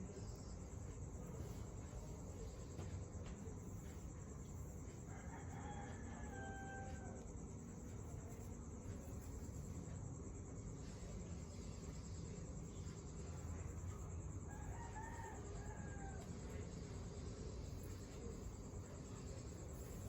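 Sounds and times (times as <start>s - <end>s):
steady low hum: 0.0s - 20.0s
rooster crowing: 5.1s - 7.2s, 14.5s - 16.4s.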